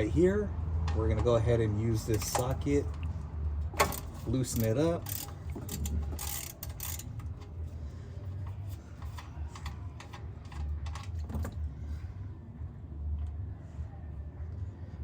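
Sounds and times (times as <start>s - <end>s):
socket wrench clicking: 3.8s - 7.5s.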